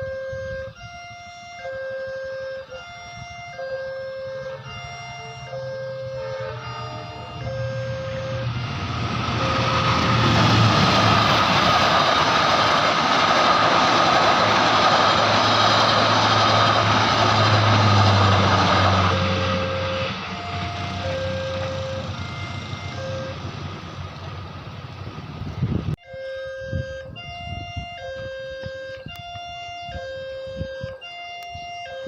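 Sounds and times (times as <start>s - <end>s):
level crossing warning siren: 0.0s - 32.0s
train passing: 2.6s - 26.0s.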